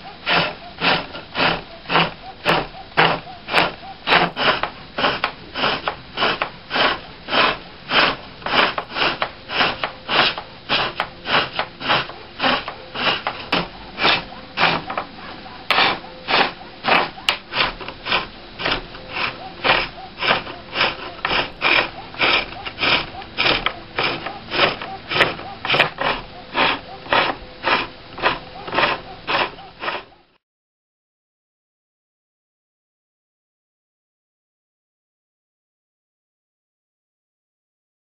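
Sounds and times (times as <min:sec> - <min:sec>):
hand tool cutting spinning wood: 0:00.0 - 0:30.4
pole lathe turning wood: 0:00.0 - 0:30.4.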